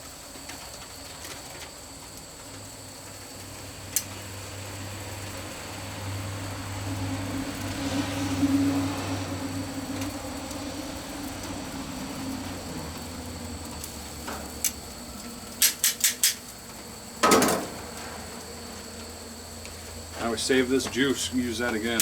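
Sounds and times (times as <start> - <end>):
metal grilling utensils clattering: 9.9 - 18.9, 19.9 - 22.0.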